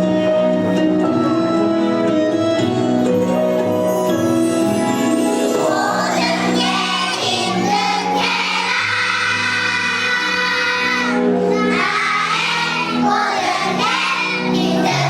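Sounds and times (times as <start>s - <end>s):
recorded instrumental accompaniment: 0.0s - 5.9s
children's choir singing: 5.5s - 15.0s.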